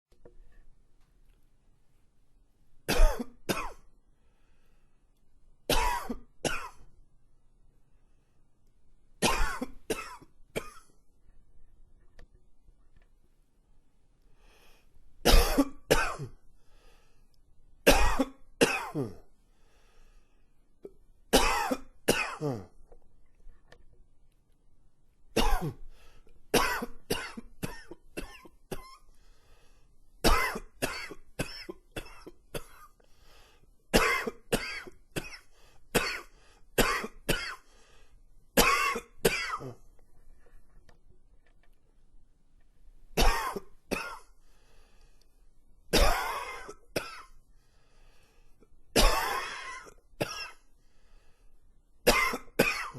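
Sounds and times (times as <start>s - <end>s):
man coughing: 2.9s - 3.8s, 5.7s - 6.8s, 15.3s - 16.4s, 17.9s - 19.3s, 21.4s - 22.8s, 25.4s - 25.8s, 36.0s - 37.6s, 38.6s - 39.8s, 43.2s - 44.3s, 49.0s - 50.6s, 52.1s - 52.9s.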